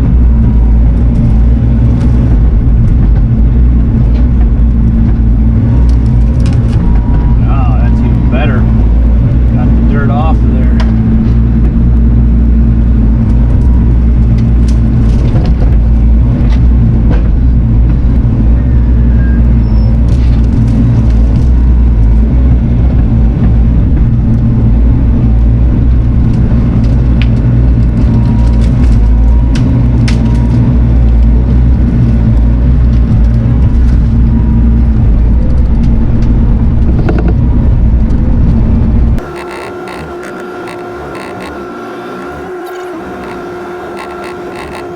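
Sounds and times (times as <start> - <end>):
diesel engine running steadily: 0.0 - 44.9.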